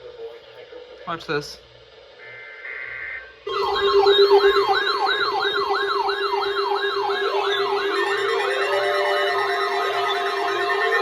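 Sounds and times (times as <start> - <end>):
siren fast yelp: 2.7 - 11.0
siren slow rising wail: 2.7 - 11.0.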